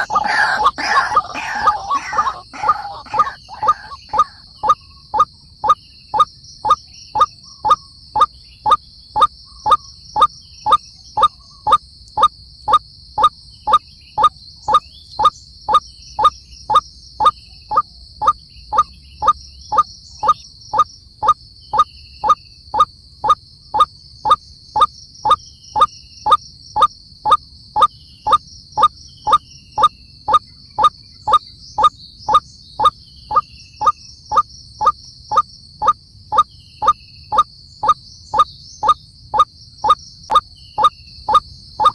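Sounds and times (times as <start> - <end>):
waterhen croaking call: 0.0 - 6.3, 40.8 - 41.9.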